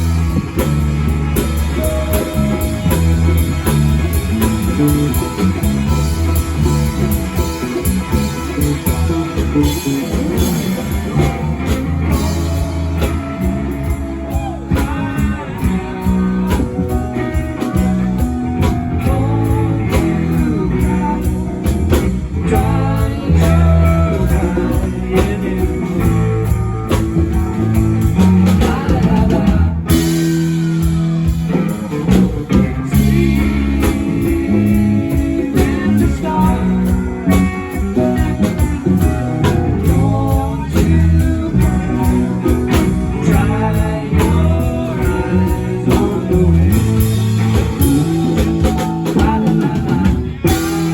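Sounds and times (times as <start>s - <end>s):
person singing: 0.0s - 30.9s, 31.5s - 50.9s
live rock band playing: 0.0s - 50.9s.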